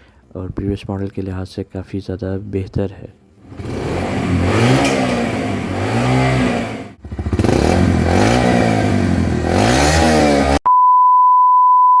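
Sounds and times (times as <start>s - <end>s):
motorcycle engine revving: 3.4s - 10.6s.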